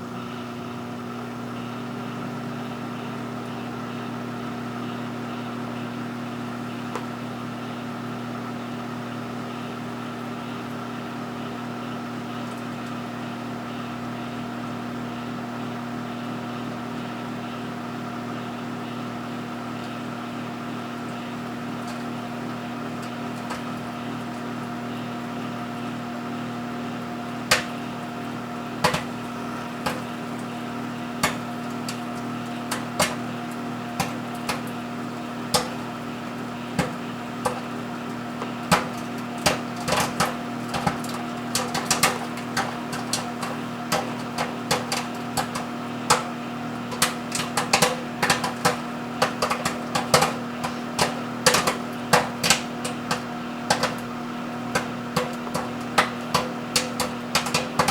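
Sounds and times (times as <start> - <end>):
microwave oven humming: 0.0 - 57.9
popcorn popping: 6.4 - 7.4, 19.5 - 57.9.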